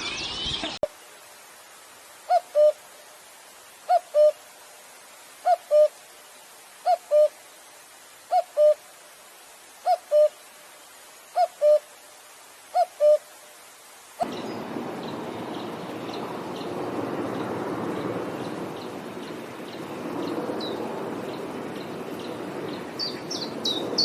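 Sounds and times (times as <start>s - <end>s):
chorus of chirping birds: 0.0s - 0.8s, 14.2s - 24.0s
quiet hiss: 0.0s - 24.0s.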